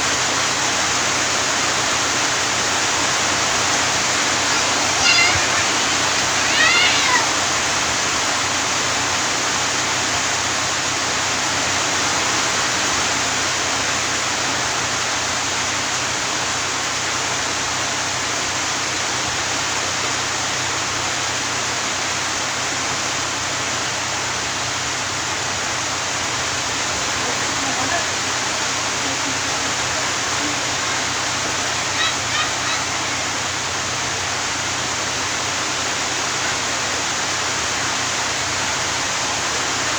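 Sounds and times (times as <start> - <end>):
steady rushing hiss: 0.0 - 39.9
short high-pitched cry: 4.3 - 7.5, 31.6 - 33.4.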